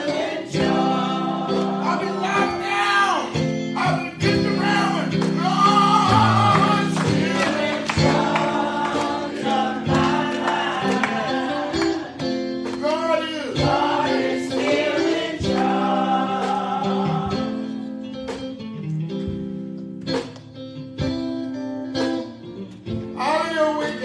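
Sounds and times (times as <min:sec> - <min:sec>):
gospel singing voices: 0:00.0 - 0:18.1
sustained instrumental chords: 0:00.0 - 0:23.2.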